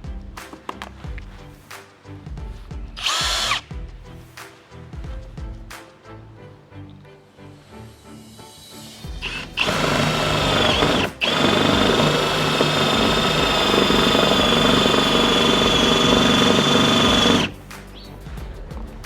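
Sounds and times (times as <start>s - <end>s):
power drill drilling into sheet metal: 3.0s - 3.6s, 9.2s - 17.6s.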